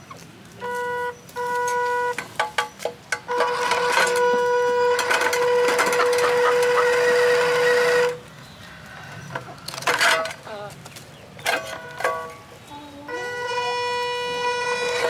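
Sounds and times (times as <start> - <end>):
horn long steady note: 0.6 - 2.4, 3.3 - 8.2, 13.1 - 15.0.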